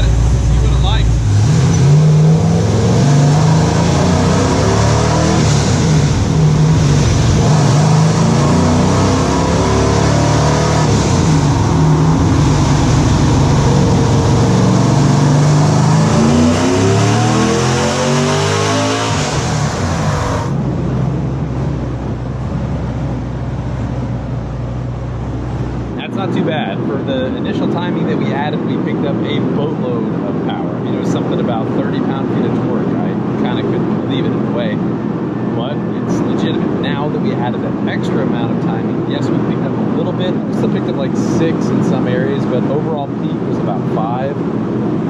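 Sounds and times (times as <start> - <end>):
engine revving on a dyno: 0.0 - 21.3.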